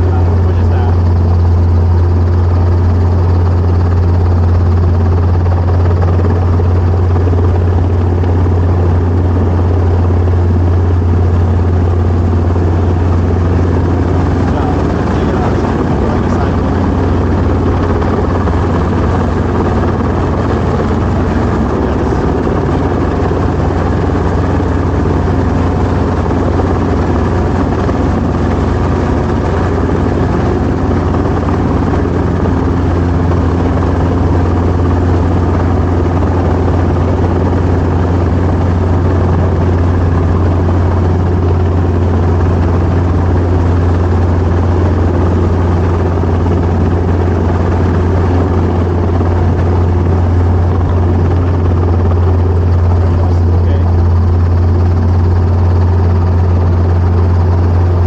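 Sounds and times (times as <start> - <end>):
helicopter engine and rotor: 0.0 - 58.0.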